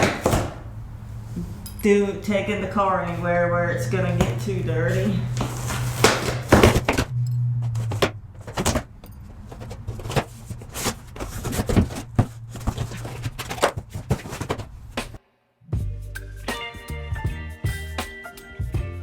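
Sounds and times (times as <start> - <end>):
steady low hum: 0.0 - 15.2
objects being handled: 4.1 - 15.2.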